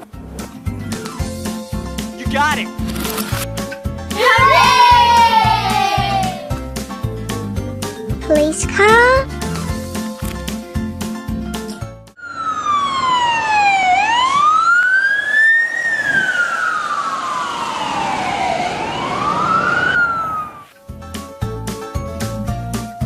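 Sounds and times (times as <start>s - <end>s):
children's music: 3.5s - 12.2s
police siren wailing: 12.2s - 20.8s.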